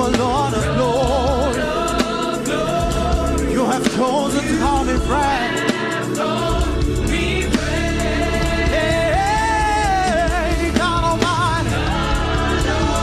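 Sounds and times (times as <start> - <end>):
gospel band playing: 0.0 - 13.0
singers with vibrato: 0.0 - 13.0.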